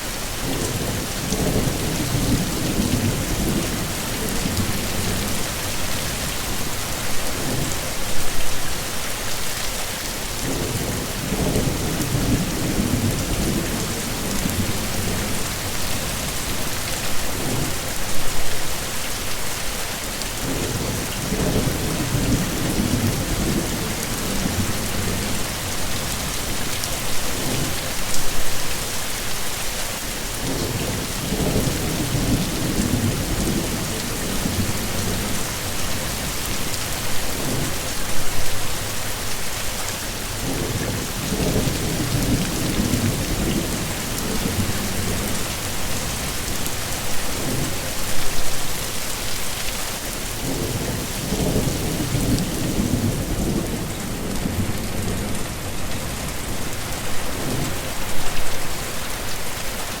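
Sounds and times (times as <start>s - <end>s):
heavy rain hissing: 0.0s - 60.0s
thunder rumbling: 50.4s - 56.6s.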